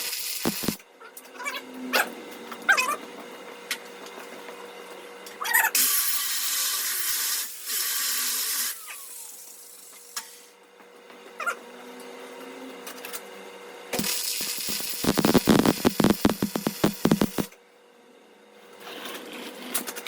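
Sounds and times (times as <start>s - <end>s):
hissing noise bursts: 14.0s - 17.5s.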